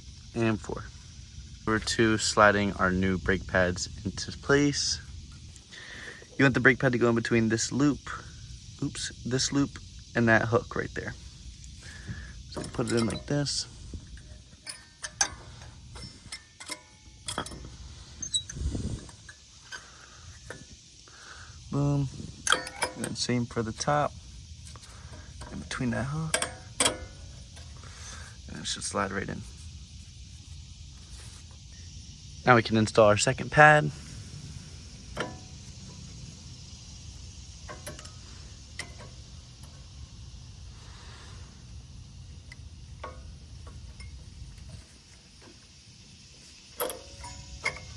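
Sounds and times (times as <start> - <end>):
steady low hum: 0.0 - 47.9
metal clicks and clinks: 11.6 - 20.8, 22.3 - 28.9, 35.1 - 41.0, 42.4 - 45.6, 46.4 - 47.9.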